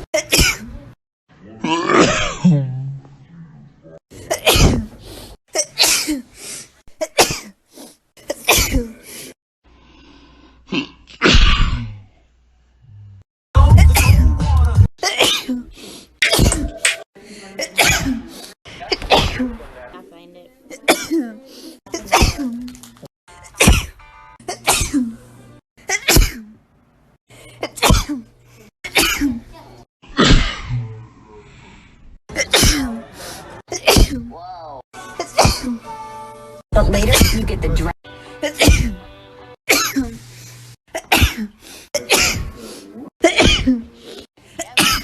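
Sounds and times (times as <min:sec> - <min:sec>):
person sneezing: 0:04.2 - 0:05.0, 0:15.0 - 0:17.0, 0:30.2 - 0:30.7, 0:35.2 - 0:35.8.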